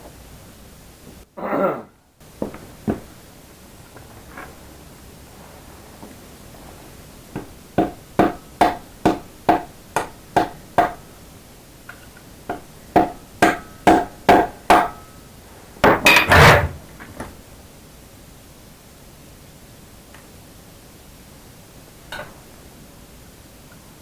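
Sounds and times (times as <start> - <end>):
hammer tapping metal punch: 7.4 - 11.2, 11.9 - 15.2
metal clatter: 15.8 - 16.8.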